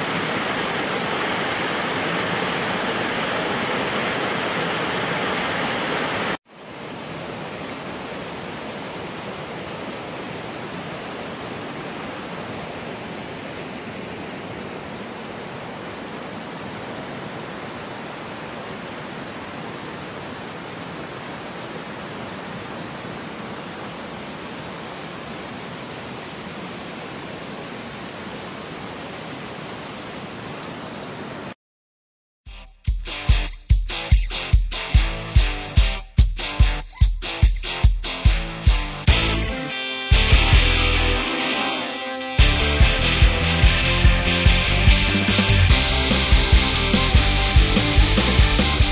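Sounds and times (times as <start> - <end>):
waterfall rushing: 0.0 - 31.6
guitar music: 32.5 - 48.9.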